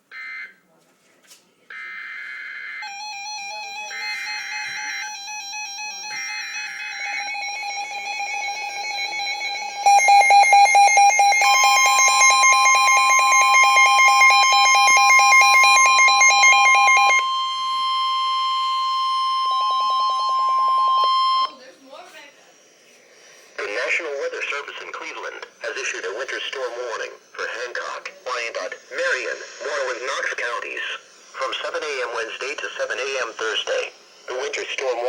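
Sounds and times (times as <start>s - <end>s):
rapidly pulsing alarm tone: 1.9s - 35.0s
steady attention tone: 3.1s - 35.0s
wavering tone: 3.2s - 21.6s
screeching data bursts: 7.0s - 17.2s, 23.6s - 35.0s.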